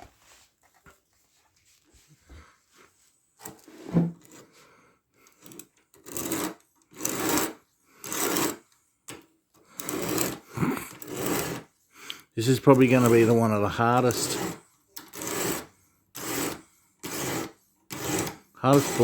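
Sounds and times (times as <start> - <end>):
sharpening stone rasping on blade: 6.1 - 8.6, 9.8 - 11.7, 14.2 - 19.0.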